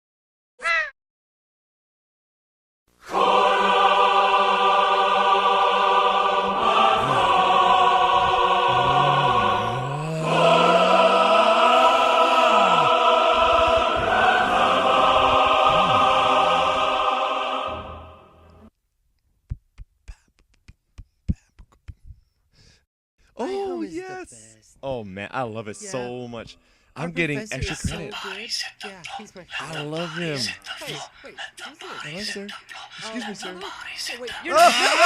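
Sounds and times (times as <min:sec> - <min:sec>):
choir singing sustained chords: 0:03.0 - 0:18.7.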